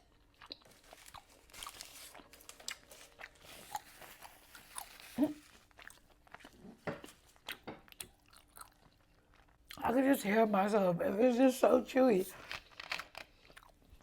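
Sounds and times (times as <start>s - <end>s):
close chewing with mouth clicks: 0.0s - 9.9s, 12.4s - 14.0s.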